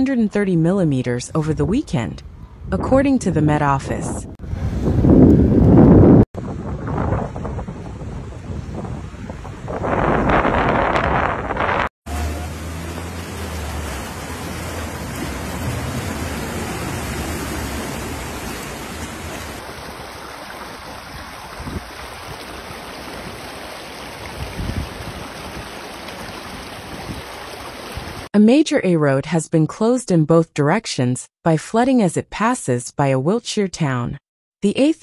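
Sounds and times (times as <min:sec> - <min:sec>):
wind noise: 0:01.4 - 0:11.9, 0:13.8 - 0:28.3
floodwater rushing: 0:06.4 - 0:28.3.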